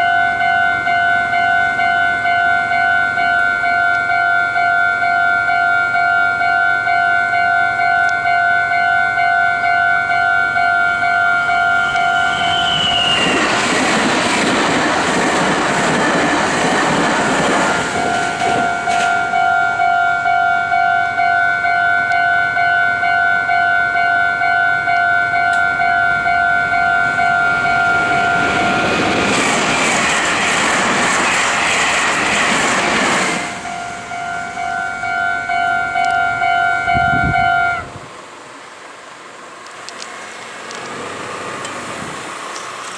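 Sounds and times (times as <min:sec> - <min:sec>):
train horn: 0:00.0 - 0:13.4, 0:17.8 - 0:28.8, 0:33.7 - 0:38.0
level-crossing alarm clanging: 0:00.0 - 0:37.9
train wheel-and-rail noise: 0:00.0 - 0:42.9.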